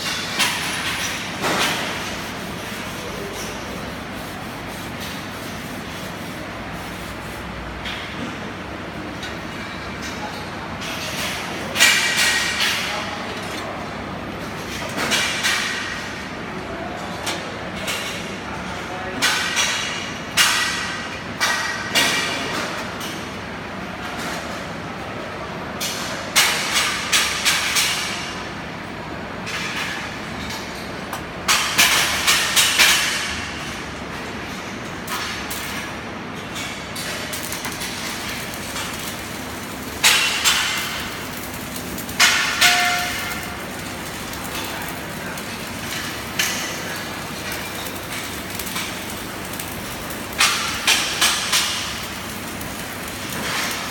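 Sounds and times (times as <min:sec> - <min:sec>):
workshop noise: 0:00.0 - 0:53.9
metal-on-metal strikes: 0:42.2 - 0:43.8.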